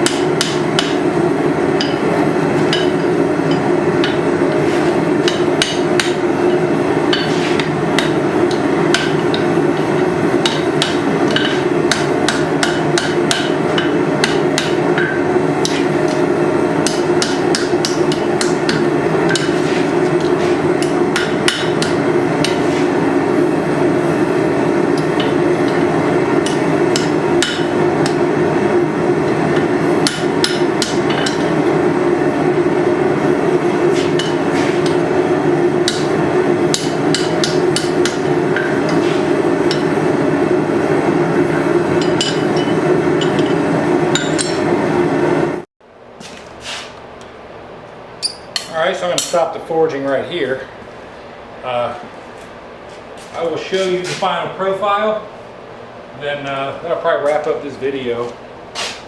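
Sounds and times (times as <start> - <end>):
hammer striking steel on anvil: 0.0 - 1.0, 1.8 - 2.1, 2.7 - 4.3, 5.2 - 16.2, 16.8 - 22.8, 24.9 - 28.2, 29.5 - 31.6, 34.0 - 35.1, 35.8 - 40.0, 42.0 - 44.7, 48.2 - 49.5.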